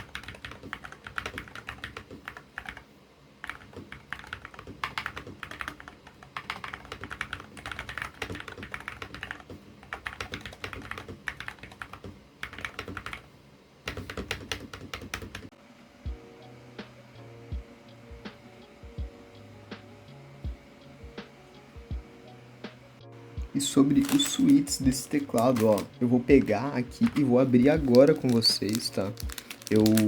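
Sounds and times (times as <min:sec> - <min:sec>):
fast typing on keyboard: 0:00.0 - 0:02.8, 0:03.4 - 0:13.3, 0:13.9 - 0:15.5, 0:23.6 - 0:30.0.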